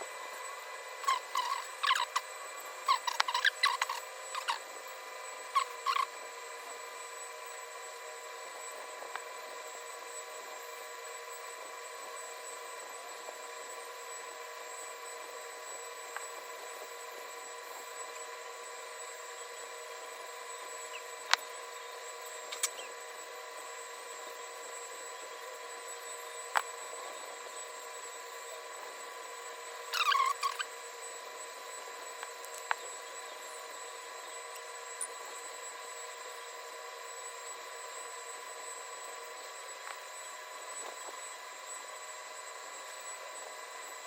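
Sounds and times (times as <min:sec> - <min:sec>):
faint steady hum: 0:00.0 - 0:44.0
short high squeaks: 0:01.0 - 0:04.6, 0:05.5 - 0:06.2, 0:22.5 - 0:22.9, 0:29.8 - 0:30.7.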